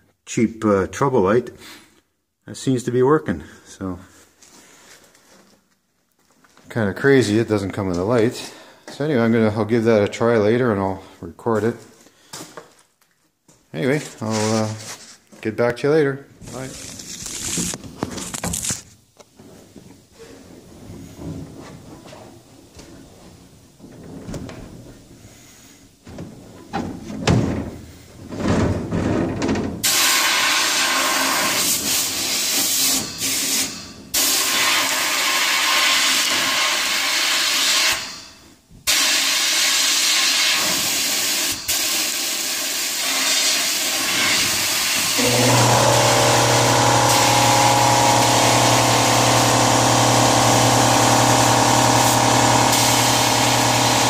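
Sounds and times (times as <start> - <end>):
air compressor motor humming: 45.1 - 54.0.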